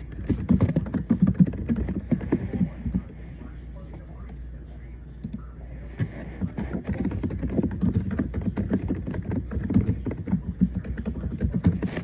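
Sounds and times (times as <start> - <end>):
fast keyboard typing: 0.0 - 3.1, 6.0 - 12.0.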